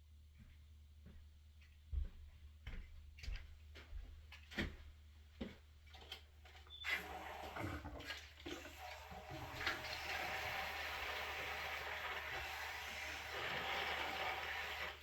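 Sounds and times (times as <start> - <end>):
faucet running into sink: 6.8 - 15.0.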